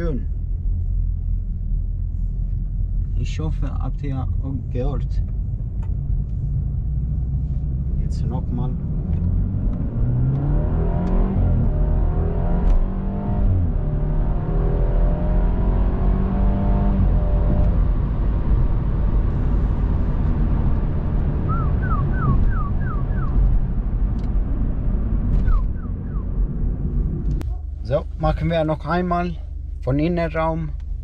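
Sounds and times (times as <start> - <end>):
car engine accelerating hard: 7.6 - 27.5.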